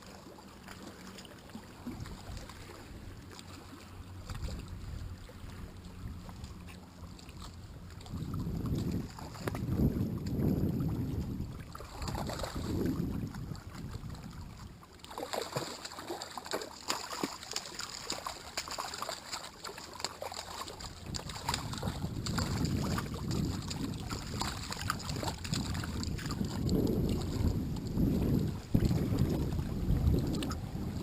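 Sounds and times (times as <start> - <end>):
wind buffeting microphone: 7.6 - 14.8, 20.6 - 31.0.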